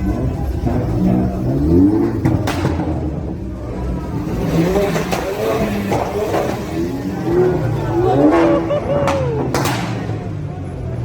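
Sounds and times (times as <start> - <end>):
car engine revving: 0.0 - 11.0
sharp crack: 8.4 - 10.3.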